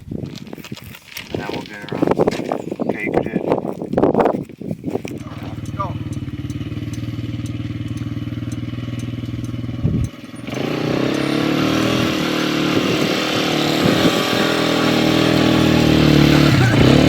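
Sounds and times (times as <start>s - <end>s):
quad engine running: 5.1s - 17.0s
wind rushing: 11.6s - 17.0s.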